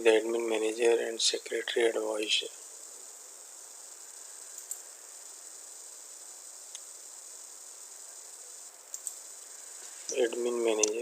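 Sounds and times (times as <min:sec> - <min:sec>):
high-pitched background hiss: 0:00.0 - 0:11.0
faint clicks: 0:04.5 - 0:04.8, 0:06.7 - 0:06.9, 0:08.9 - 0:09.2, 0:10.8 - 0:11.0.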